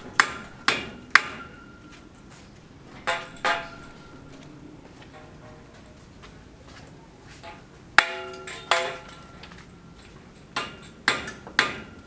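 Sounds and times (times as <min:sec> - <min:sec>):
hammer striking metal: 0:00.0 - 0:02.1, 0:02.9 - 0:05.3, 0:08.0 - 0:09.7, 0:10.6 - 0:12.0.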